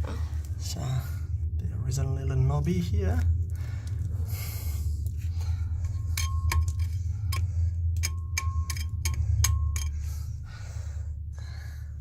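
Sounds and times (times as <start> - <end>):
steady low hum: 0.0 - 12.0
metal tool clicking on rock: 8.0 - 10.0.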